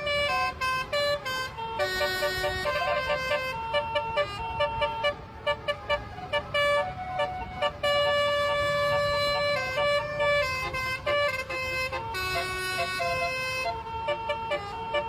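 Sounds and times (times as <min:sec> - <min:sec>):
multi-tone bus horn melody: 0:00.0 - 0:15.0.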